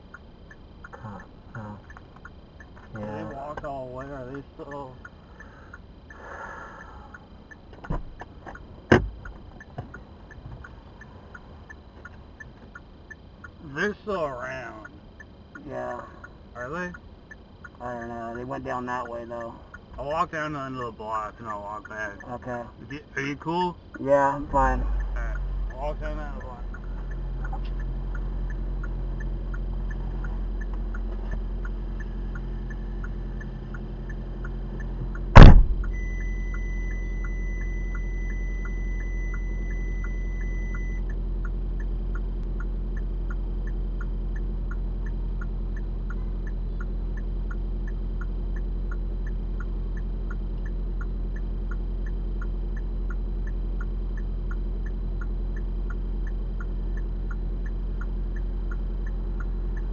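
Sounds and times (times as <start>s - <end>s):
low car interior hum: 0.0s - 59.9s
car door slamming: 8.9s - 9.2s, 35.3s - 35.9s
electronic warning tone: 35.4s - 41.2s.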